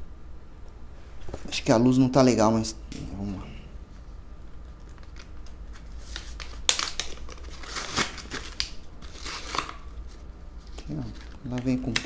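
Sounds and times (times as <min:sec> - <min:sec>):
plastic crinkling and rustling: 0:04.6 - 0:12.0.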